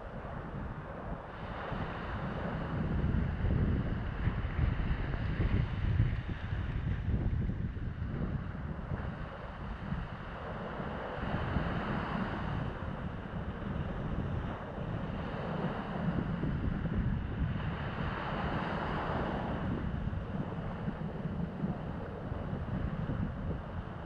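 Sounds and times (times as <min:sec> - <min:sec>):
wind buffeting microphone: 0:00.0 - 0:24.0
sea surf washing in: 0:09.0 - 0:24.0.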